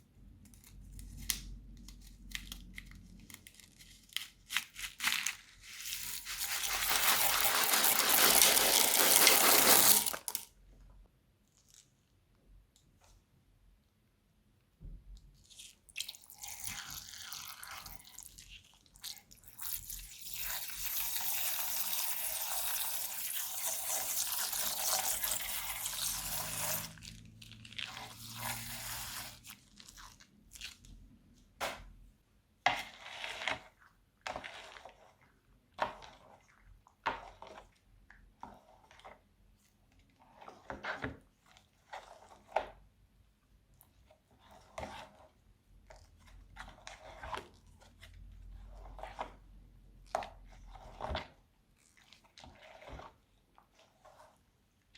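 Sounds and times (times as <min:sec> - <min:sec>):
slime crackling and squelching: 0:00.7 - 0:10.4, 0:23.2 - 0:31.1.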